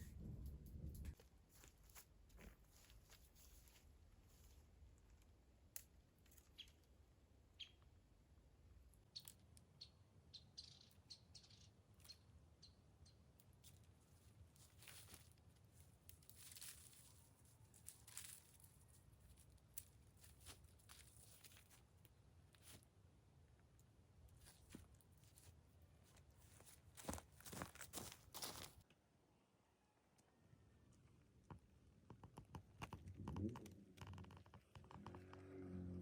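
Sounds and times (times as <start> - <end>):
faint small clicks and rustles: 0.4 - 7.0, 13.4 - 22.9, 30.9 - 35.6.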